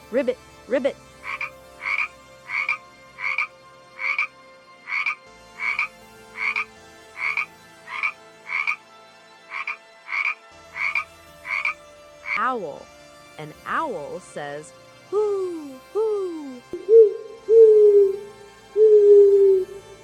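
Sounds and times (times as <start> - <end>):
frog croaking: 1.1 - 8.8, 9.5 - 12.4.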